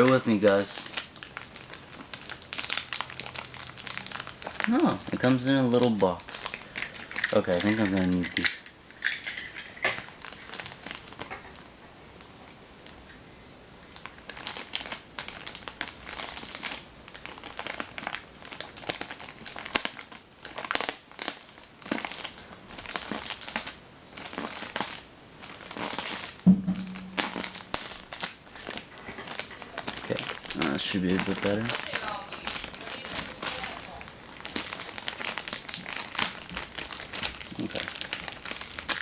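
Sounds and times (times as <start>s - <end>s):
packaging crinkling and rustling: 0.0s - 13.0s, 13.9s - 26.4s, 27.0s - 39.0s
low hum: 26.5s - 28.2s.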